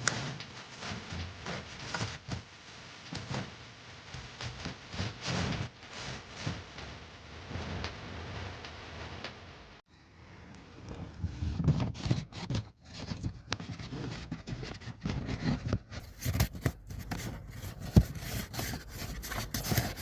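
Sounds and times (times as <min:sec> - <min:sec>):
plastic parts rubbing and scraping: 0:10.9 - 0:20.0.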